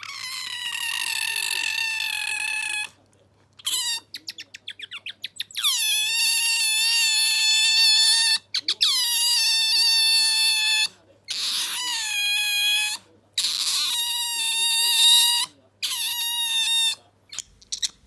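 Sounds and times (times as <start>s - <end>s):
otter squealing: 0.0s - 3.0s, 3.6s - 18.0s
otter chirps: 3.6s - 18.0s.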